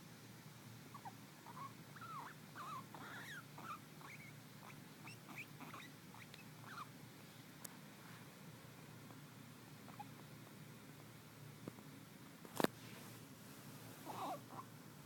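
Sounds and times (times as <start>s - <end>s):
guinea pig squeaking: 0.9s - 6.9s, 9.8s - 10.1s, 14.1s - 14.7s.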